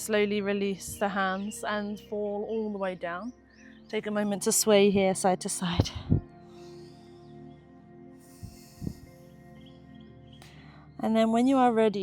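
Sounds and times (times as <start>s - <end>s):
soft sustained background music: 0.0s - 12.0s
dull low thumps: 5.7s - 6.3s.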